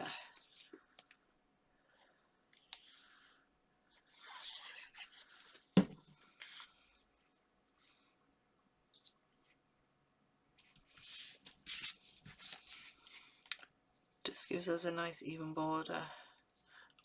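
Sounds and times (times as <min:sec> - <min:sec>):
paper rustling and sliding: 0:11.0 - 0:13.2.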